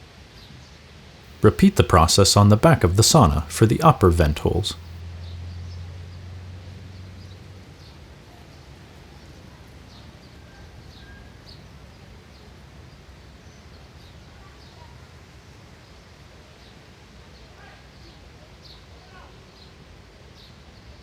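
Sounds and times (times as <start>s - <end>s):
outdoor background hiss: 1.3s - 5.0s.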